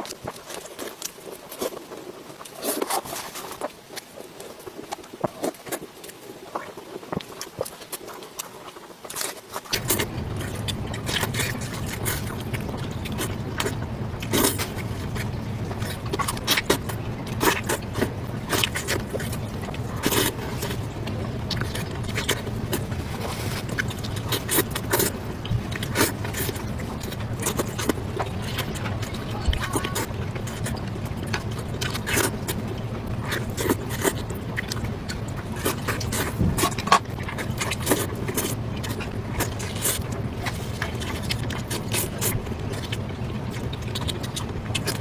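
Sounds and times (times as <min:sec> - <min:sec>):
crunching bites and chews: 0:00.0 - 0:45.0
steady low hum: 0:09.7 - 0:45.0.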